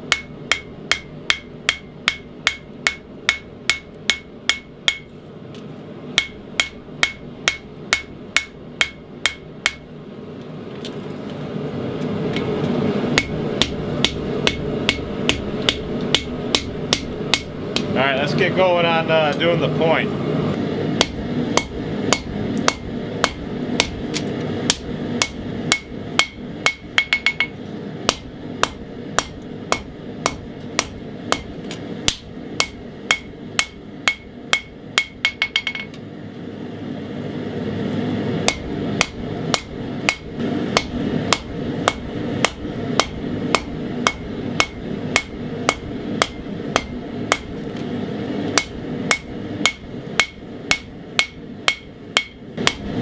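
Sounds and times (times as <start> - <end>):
hammer ringing on anvil: 0.1 - 5.1, 6.2 - 9.8, 24.7 - 31.5, 38.5 - 47.5, 48.6 - 52.8.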